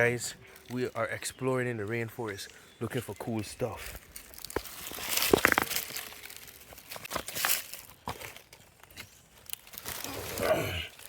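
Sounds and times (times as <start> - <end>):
dry leaves crackling and rustling: 3.5 - 11.0.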